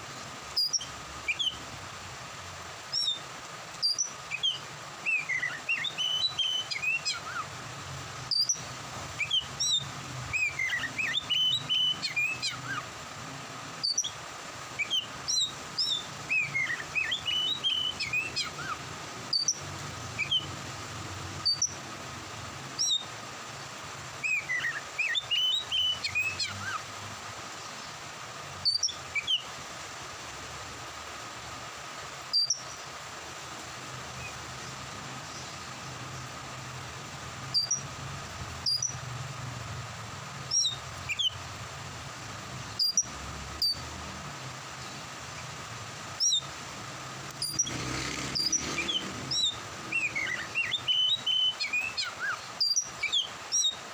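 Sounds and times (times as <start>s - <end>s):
low background noise: 0.0s - 53.9s
bird singing whistled phrases: 0.6s - 1.6s, 2.9s - 3.2s, 3.8s - 7.5s, 8.3s - 8.6s, 9.2s - 12.8s, 13.8s - 14.2s, 14.8s - 19.6s, 20.2s - 20.5s, 21.4s - 21.8s, 22.8s - 23.1s, 24.2s - 26.8s, 28.6s - 29.5s, 32.3s - 32.8s, 37.5s - 37.8s, 38.6s - 39.0s, 40.5s - 41.4s, 42.8s - 43.8s, 46.2s - 46.5s, 47.4s - 53.8s.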